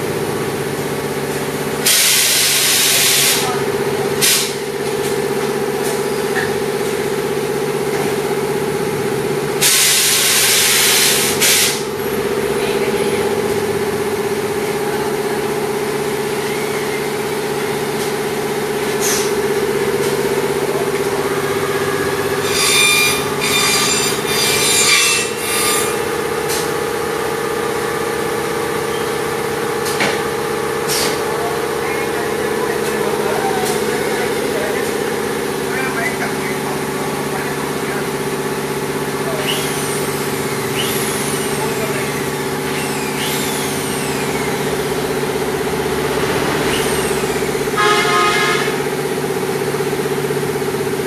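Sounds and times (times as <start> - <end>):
machine humming: 0.0 - 35.7, 38.7 - 50.8
air hiss: 9.6 - 11.9.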